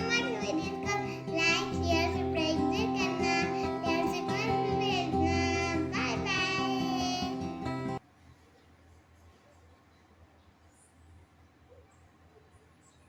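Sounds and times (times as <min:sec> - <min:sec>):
held music chords: 0:00.0 - 0:08.0
high singing voice: 0:00.0 - 0:08.0.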